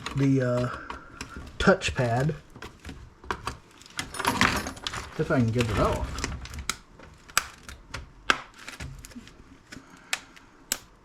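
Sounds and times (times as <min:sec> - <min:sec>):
plastic clicks and cracks: 0:05.6 - 0:11.0.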